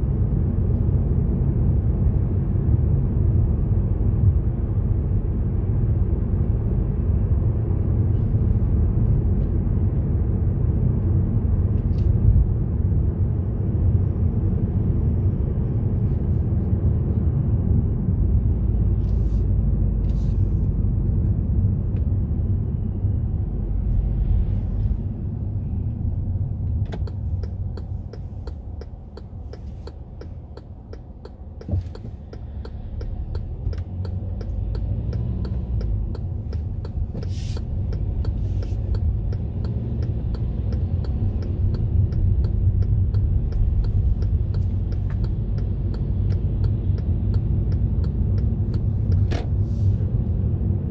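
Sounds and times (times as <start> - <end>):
car engine and tyre rumble: 0.0 - 50.9.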